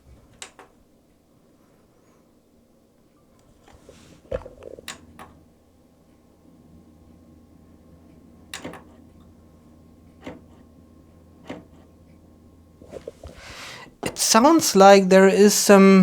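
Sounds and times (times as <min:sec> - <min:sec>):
machine low steady hum: 0:00.0 - 0:16.0
mechanical clicks and knocks: 0:00.3 - 0:00.8, 0:08.5 - 0:09.3, 0:10.1 - 0:10.7, 0:11.4 - 0:12.2.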